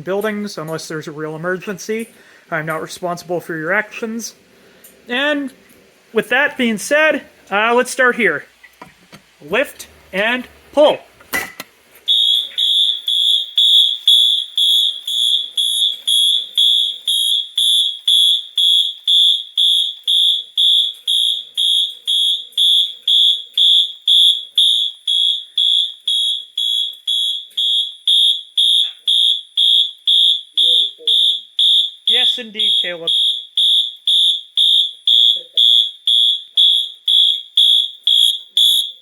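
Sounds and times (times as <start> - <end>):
fire alarm horn pulsing: 12.1 - 39.0.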